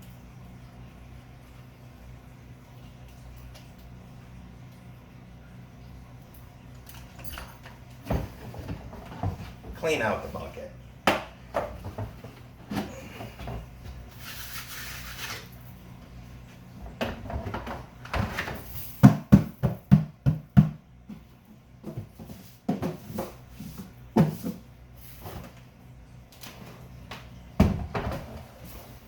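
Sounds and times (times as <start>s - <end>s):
plastic bucket knocking: 19.0s - 21.2s.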